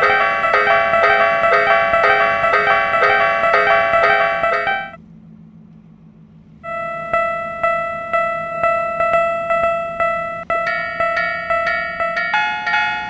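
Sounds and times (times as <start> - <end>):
repeating bright synth note: 0.0 - 5.0, 6.6 - 12.1
synthesized keyboard melody: 0.0 - 5.0, 6.6 - 13.0.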